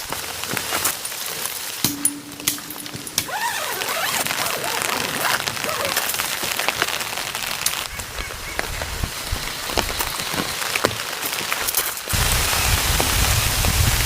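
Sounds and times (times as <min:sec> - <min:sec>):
raindrops hitting a surface: 0:00.0 - 0:14.0
steady rain falling: 0:00.0 - 0:14.0.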